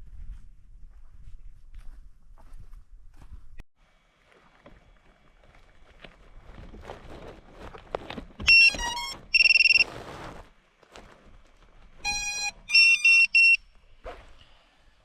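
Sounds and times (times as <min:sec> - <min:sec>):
handling rustle and knocks: 0:04.1 - 0:12.7
electronic beeps: 0:08.5 - 0:09.8, 0:12.1 - 0:13.6
long steady beep: 0:08.5 - 0:09.8, 0:12.1 - 0:13.6.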